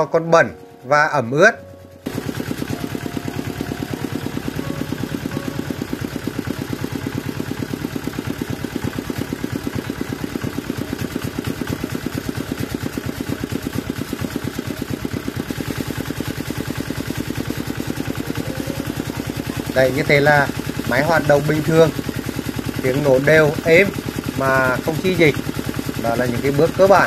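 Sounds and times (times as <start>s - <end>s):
diesel engine running: 1.6s - 27.0s.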